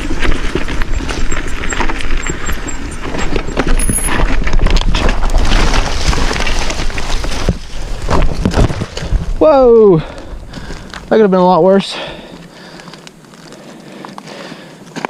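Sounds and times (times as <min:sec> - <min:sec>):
bike parts rattling: 0:00.0 - 0:09.3
wind rumbling on microphone: 0:00.0 - 0:11.2
tyres knocking over rock: 0:03.4 - 0:09.3.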